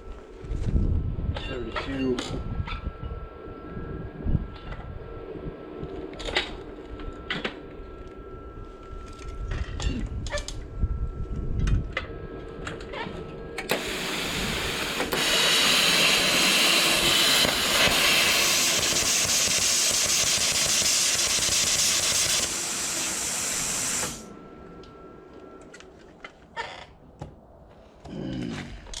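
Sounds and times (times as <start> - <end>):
plasma cutter hissing: 13.7 - 24.3.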